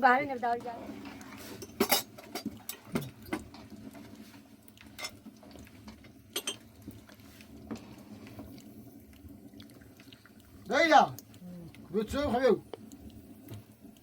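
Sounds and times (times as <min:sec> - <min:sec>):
pots and utensils clinking: 0:00.6 - 0:06.9.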